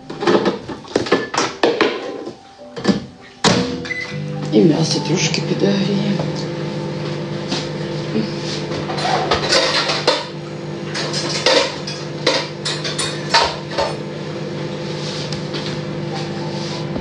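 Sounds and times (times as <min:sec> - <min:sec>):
dishes and cutlery clattering: 0:00.0 - 0:04.0, 0:08.9 - 0:14.0
steady hum: 0:03.5 - 0:17.0.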